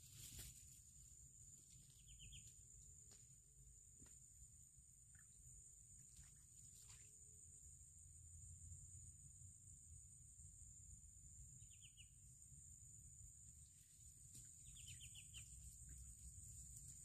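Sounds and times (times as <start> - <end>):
faint bird chirps: 0.0 - 3.2, 4.8 - 7.9, 10.6 - 16.4.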